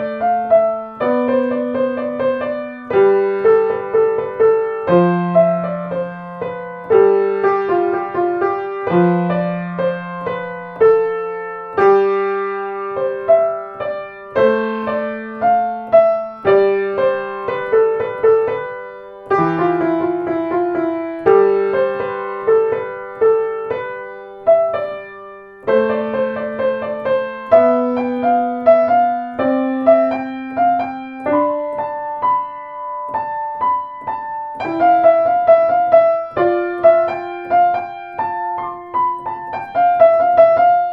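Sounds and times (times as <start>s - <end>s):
solo piano chords: 0.0s - 40.9s.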